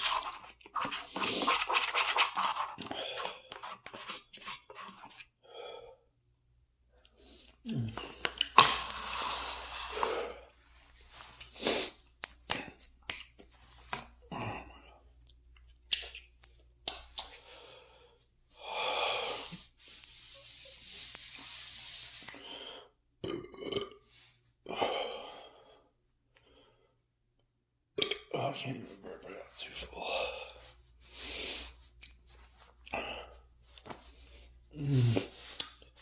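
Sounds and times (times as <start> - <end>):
man chewing: 7.0 - 10.5, 11.2 - 13.5, 30.4 - 33.1, 33.7 - 36.0
strained breathing: 7.2 - 12.1, 17.3 - 23.0
short burps: 23.2 - 24.0, 28.0 - 28.3.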